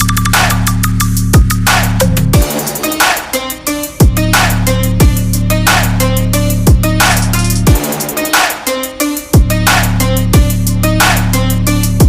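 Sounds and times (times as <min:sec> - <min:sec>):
electronic music with heavy beat: 0:00.0 - 0:12.0
hi-hat ticks: 0:05.0 - 0:08.3.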